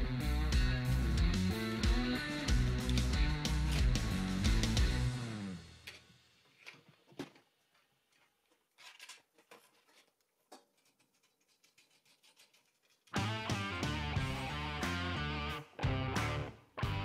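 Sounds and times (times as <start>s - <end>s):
guitar background music: 0.0s - 6.0s, 13.1s - 17.0s.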